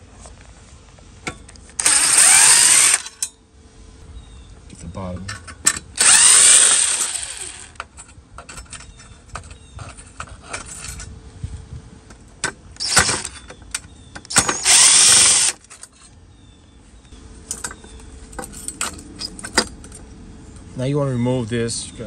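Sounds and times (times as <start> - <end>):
power drill running: 1.8 - 3.1, 6.0 - 7.8, 12.8 - 13.4, 14.3 - 15.6.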